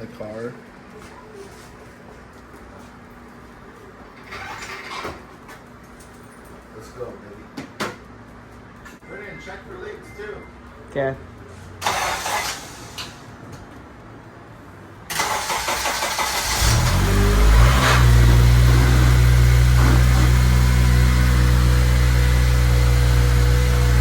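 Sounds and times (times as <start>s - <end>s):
starter motor cranking: 11.8s - 13.2s, 15.1s - 20.6s
car engine idling: 15.1s - 24.0s.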